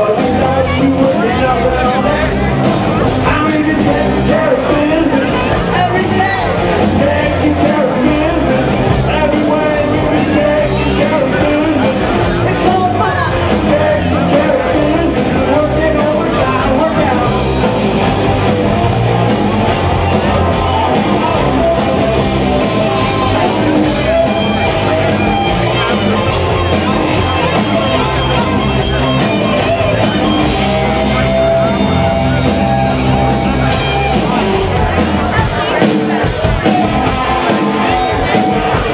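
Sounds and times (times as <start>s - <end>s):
person singing: 0.0s - 18.0s
live rock band playing: 0.0s - 38.9s
steady drumbeat: 0.0s - 38.9s.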